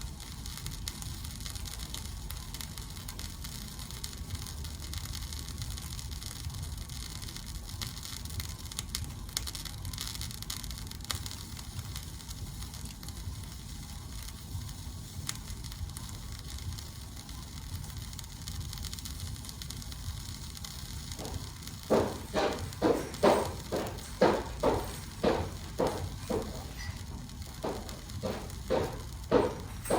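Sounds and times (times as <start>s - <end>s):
sandwich sizzling and crackling: 0.0s - 29.9s
sharp knocks or steps: 21.2s - 29.9s.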